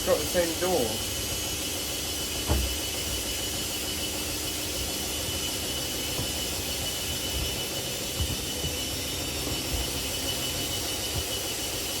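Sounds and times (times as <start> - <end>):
washing machines whirring: 0.0 - 12.0
dull thump: 2.5 - 2.8, 6.1 - 6.4.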